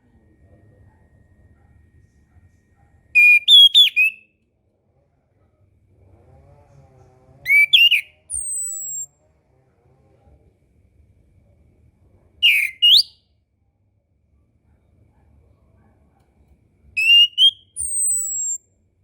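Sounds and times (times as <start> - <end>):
thrush singing whistled notes: 3.2 - 4.2, 7.5 - 9.1, 12.4 - 13.1, 17.0 - 18.6.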